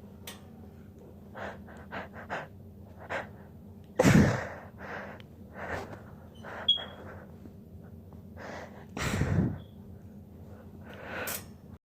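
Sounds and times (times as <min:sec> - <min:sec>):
woman stifling sneezes: 0:04.0 - 0:04.5.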